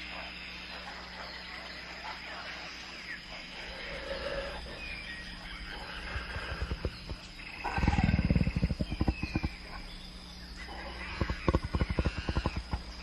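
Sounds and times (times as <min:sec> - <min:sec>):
animals chirping: 0:00.0 - 0:13.0
deep rough animal roaring: 0:05.7 - 0:09.6.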